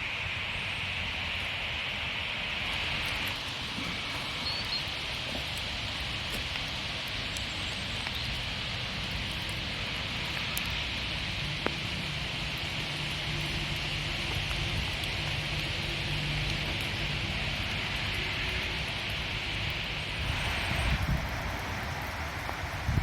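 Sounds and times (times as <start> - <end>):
steady rain falling: 0.0 - 23.0
water drips: 2.4 - 23.0.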